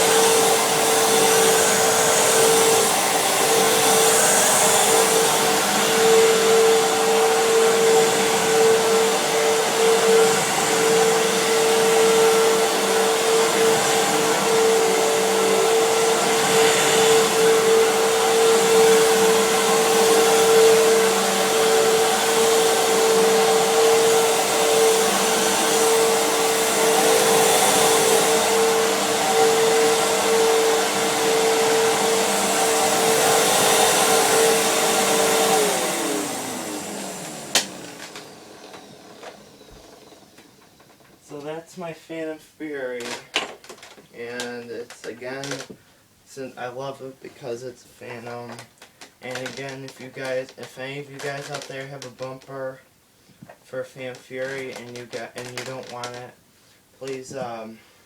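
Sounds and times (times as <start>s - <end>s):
vacuum cleaner motor whine: 0.0s - 45.8s, 46.6s - 52.6s, 53.4s - 56.4s, 57.0s - 57.7s.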